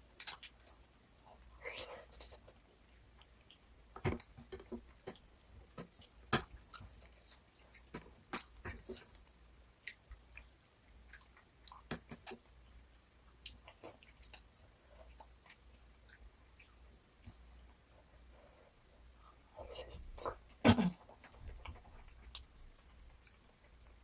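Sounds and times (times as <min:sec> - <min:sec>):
person chewing crunchy food: 0:00.0 - 0:17.7.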